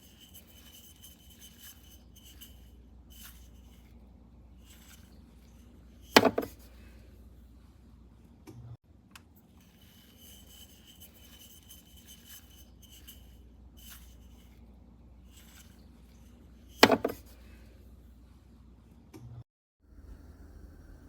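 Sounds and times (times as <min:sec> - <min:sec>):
rubbing and handling noises: 0:00.0 - 0:08.3, 0:09.4 - 0:17.7.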